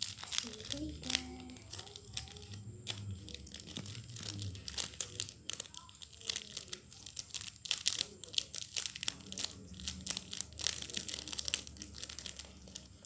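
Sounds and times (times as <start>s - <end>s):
slime squelching and crackling: 0.0s - 13.0s.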